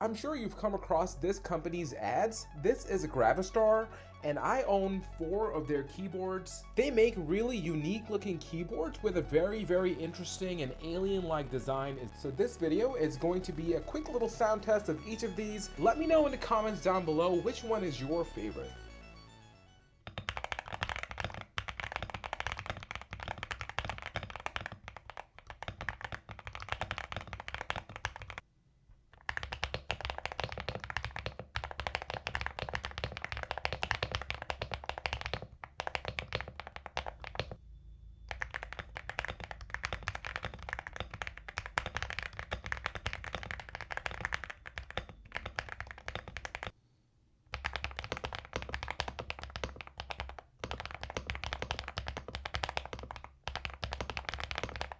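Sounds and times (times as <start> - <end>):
mechanical keyboard typing: 20.1 - 28.4, 29.2 - 37.6, 38.3 - 46.8, 47.5 - 54.9.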